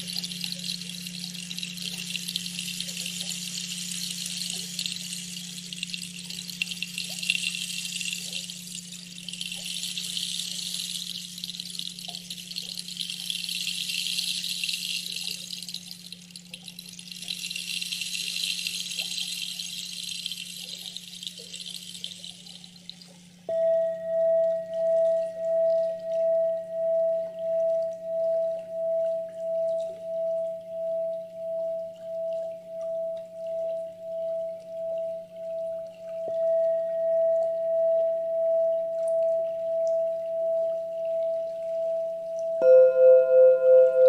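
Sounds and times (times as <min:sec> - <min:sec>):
running water hissing: 0:00.0 - 0:23.4
steady low hum: 0:00.0 - 0:44.0.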